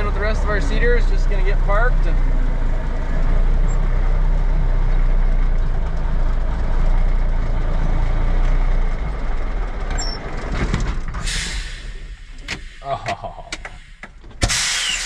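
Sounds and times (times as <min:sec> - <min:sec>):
diesel truck engine rumbling: 0:00.0 - 0:15.0.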